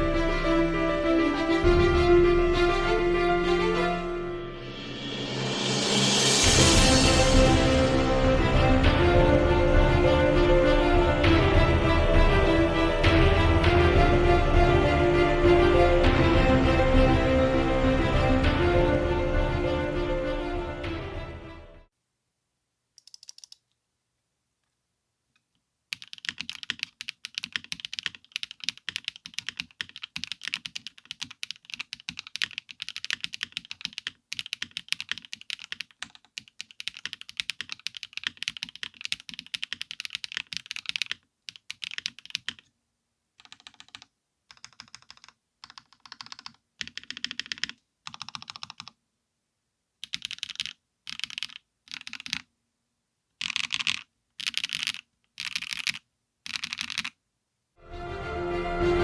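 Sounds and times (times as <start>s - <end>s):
mechanical keyboard typing: 23.0s - 23.6s, 25.9s - 42.7s, 43.4s - 49.0s, 50.0s - 52.5s, 53.4s - 57.2s.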